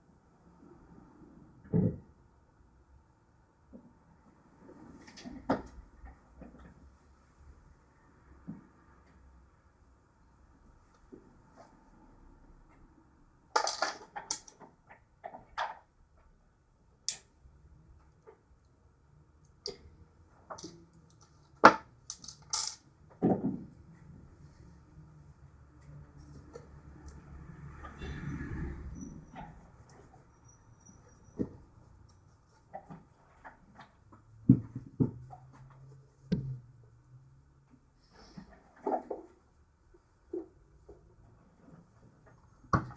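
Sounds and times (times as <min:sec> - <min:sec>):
tools and parts clicking: 0:13.6 - 0:14.6, 0:20.5 - 0:22.9.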